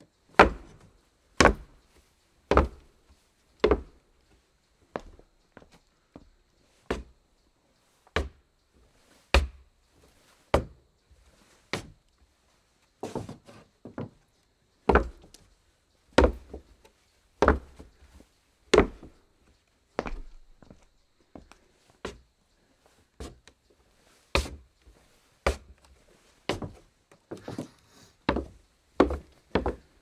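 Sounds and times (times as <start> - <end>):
footsteps on wooden floor: 16.2 - 16.6, 18.8 - 19.2, 20.0 - 21.5, 26.5 - 30.0
floor creaks and scuffs: 24.1 - 29.9.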